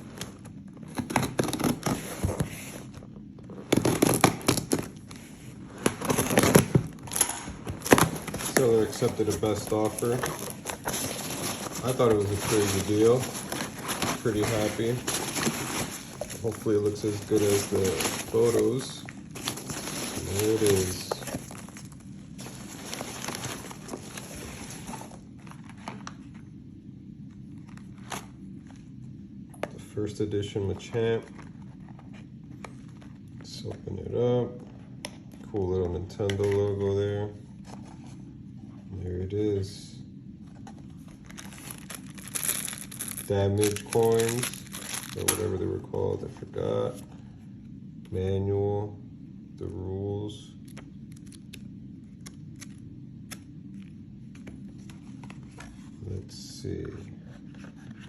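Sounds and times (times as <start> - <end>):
packaging tearing and crackling: 1.0 - 2.1, 3.7 - 5.0, 5.8 - 25.2, 41.2 - 45.5, 50.7 - 51.6, 52.2 - 53.9.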